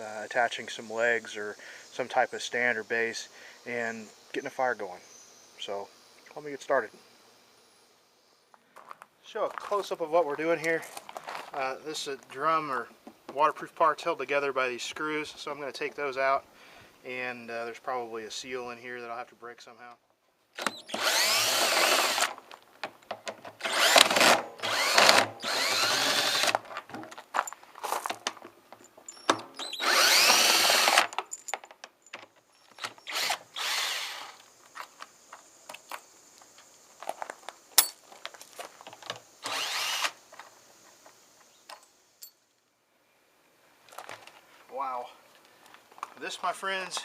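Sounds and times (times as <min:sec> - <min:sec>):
power drill whining: 0:20.6 - 0:22.4, 0:23.6 - 0:26.6, 0:29.2 - 0:31.2, 0:32.8 - 0:34.5, 0:39.4 - 0:40.2.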